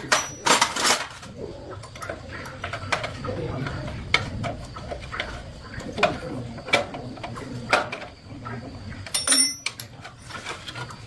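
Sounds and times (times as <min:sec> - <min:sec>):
metal tools clicking and knocking: 0:09.0 - 0:10.4.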